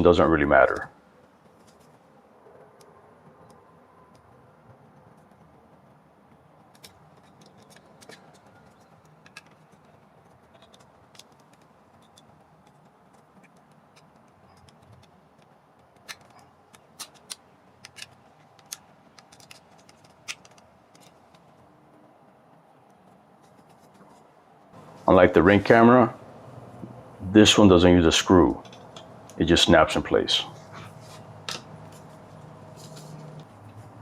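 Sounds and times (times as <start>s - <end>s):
small clicks and scratches: 0.7s - 21.7s, 22.8s - 24.8s.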